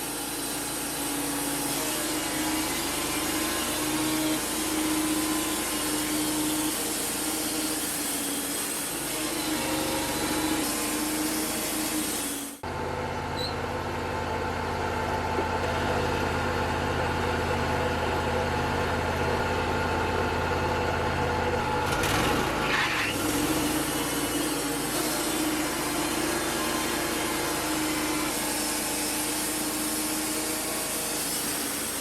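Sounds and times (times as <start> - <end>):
portable sawmill engine humming: 12.6 - 32.0.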